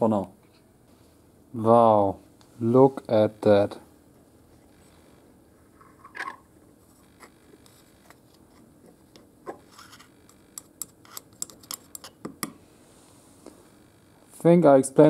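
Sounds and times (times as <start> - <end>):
parts scraping on workbench: 9.5 - 10.2.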